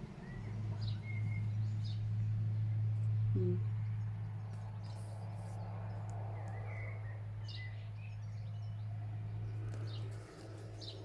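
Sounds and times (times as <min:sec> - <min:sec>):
faint bird chirps: 0:03.3 - 0:03.8.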